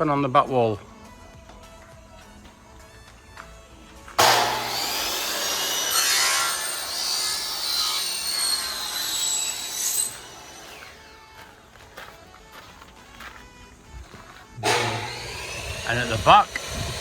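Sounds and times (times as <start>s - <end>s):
power tool cutting: 4.2s - 11.4s, 14.5s - 17.0s.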